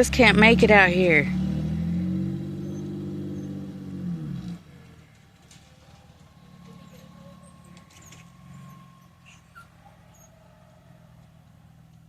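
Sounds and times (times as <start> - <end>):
distant engine humming: 0.0 - 12.0
high-pitched animal calls: 6.7 - 10.4.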